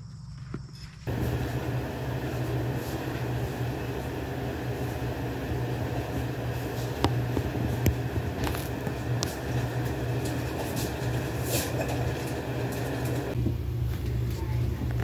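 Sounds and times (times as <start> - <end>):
low mechanical hum: 0.1 - 15.0.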